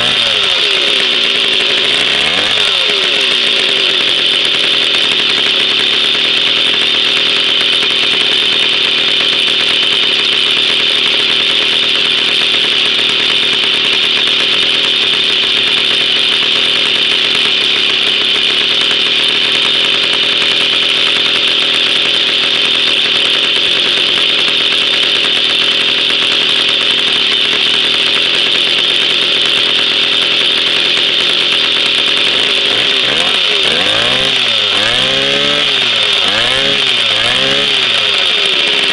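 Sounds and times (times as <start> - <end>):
two-stroke moped engine running: 0.0 - 38.9.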